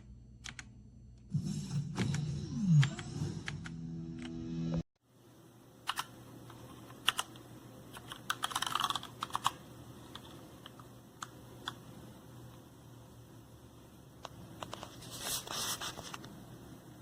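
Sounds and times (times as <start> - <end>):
mechanical keyboard clicks: 5.9 - 6.1, 7.0 - 11.8.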